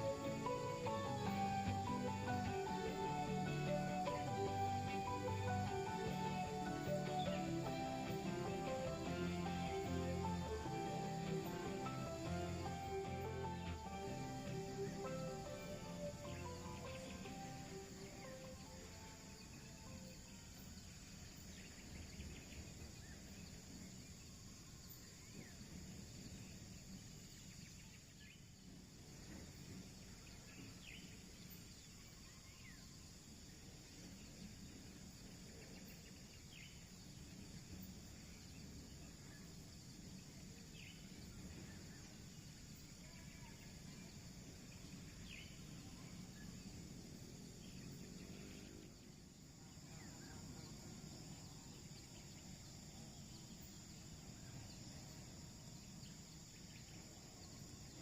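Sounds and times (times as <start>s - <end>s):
bird chirps: 0.0s - 23.5s
high insect drone: 0.0s - 58.0s.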